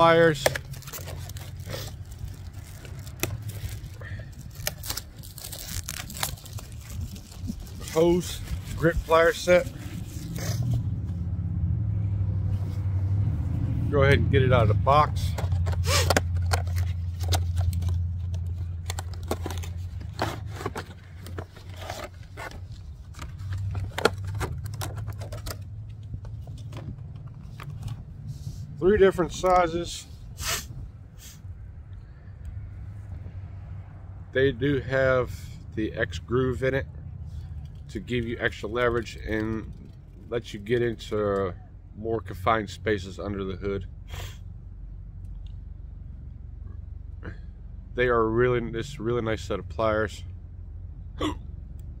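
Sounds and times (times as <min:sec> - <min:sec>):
packaging crinkling: 0:00.2 - 0:09.4.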